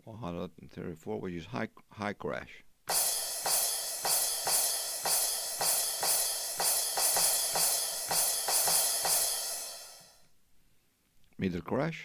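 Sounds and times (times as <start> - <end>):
drum machine crash cymbal: 2.9 - 10.3.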